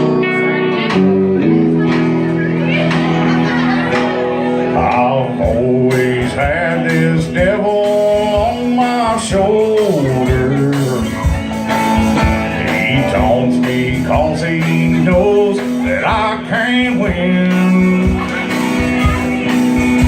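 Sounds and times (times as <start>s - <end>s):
country-blues band playing: 0.0s - 20.0s
sliding guitar melody: 0.0s - 20.0s.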